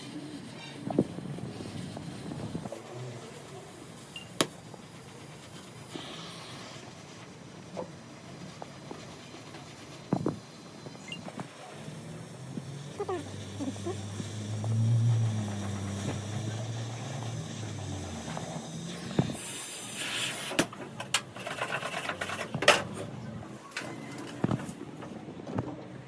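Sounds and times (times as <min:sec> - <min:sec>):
low engine hum: 0:10.2 - 0:19.7
irregular knocks and clatter: 0:20.6 - 0:25.7.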